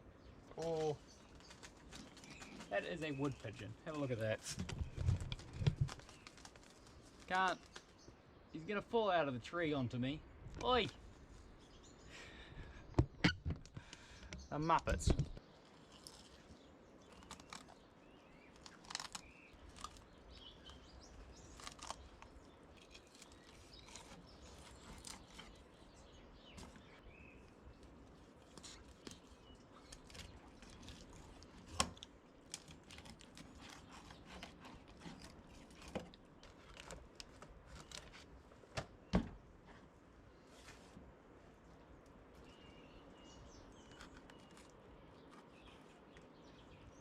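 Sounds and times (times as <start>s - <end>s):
light clicks and crackles: 0.5s - 8.1s, 13.5s - 17.8s, 18.4s - 25.8s, 26.5s - 38.9s.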